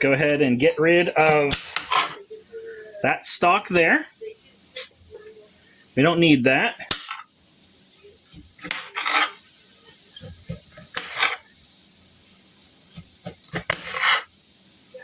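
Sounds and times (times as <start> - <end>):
steady high hiss: 0.0 - 15.0
knife scraping cutting board: 1.2 - 2.2, 6.9 - 7.3, 8.3 - 11.5, 12.9 - 14.3.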